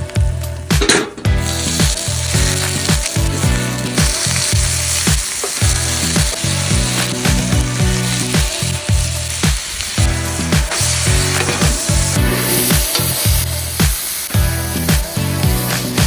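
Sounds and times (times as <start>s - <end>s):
background music with beat: 0.0s - 16.0s
food sizzling: 0.0s - 16.0s.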